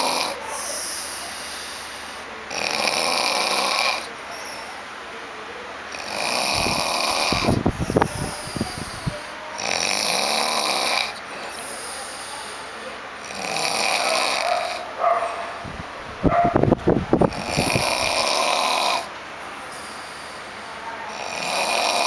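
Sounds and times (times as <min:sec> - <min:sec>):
person snoring: 0:05.9 - 0:07.6, 0:08.4 - 0:11.2, 0:13.2 - 0:14.4, 0:17.3 - 0:19.1, 0:21.1 - 0:22.0.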